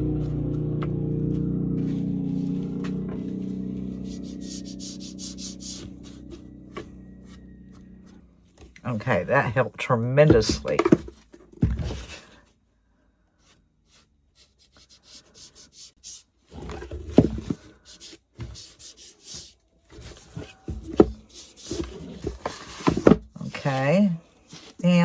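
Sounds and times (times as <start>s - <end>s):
hands rubbing wooden piece: 0.0s - 10.8s
scraping and rubbing: 0.0s - 12.4s, 13.4s - 25.0s.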